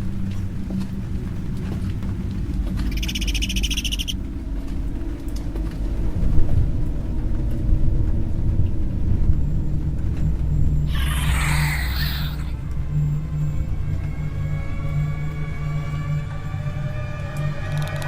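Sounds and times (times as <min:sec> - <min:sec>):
low steady rumble: 0:00.0 - 0:17.7
shrill pulsing creature trill: 0:02.9 - 0:04.2, 0:10.9 - 0:12.6.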